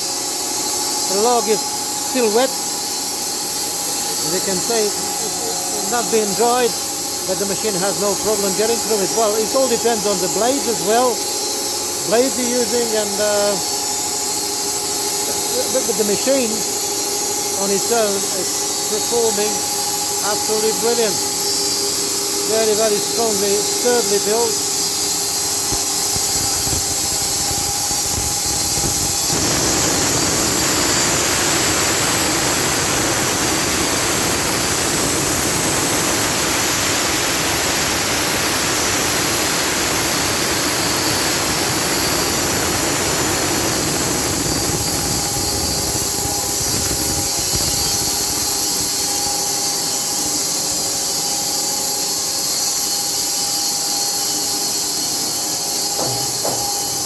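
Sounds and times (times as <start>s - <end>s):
sawmill machine hum: 0.0s - 49.8s, 55.6s - 57.0s
saw cutting through log: 1.1s - 13.8s, 22.4s - 48.6s.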